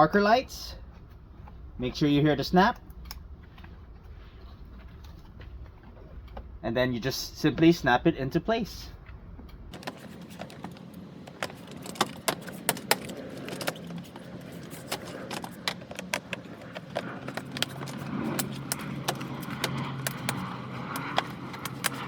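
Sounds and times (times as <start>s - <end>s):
low steady hum: 0.0s - 22.0s
small hard parts clattering: 9.7s - 22.0s.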